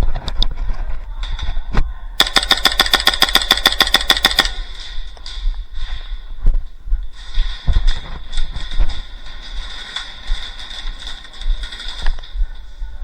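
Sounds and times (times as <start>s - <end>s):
airsoft gun full-auto burst: 2.2s - 4.7s
single airsoft shots: 2.2s - 4.7s.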